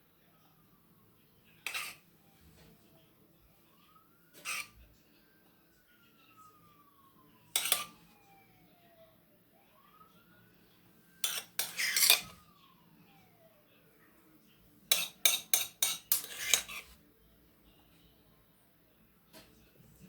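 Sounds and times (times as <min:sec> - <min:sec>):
spoon clinking and scraping dish: 0:01.6 - 0:02.0, 0:04.4 - 0:04.8, 0:07.6 - 0:08.0, 0:11.2 - 0:12.4, 0:14.9 - 0:17.0.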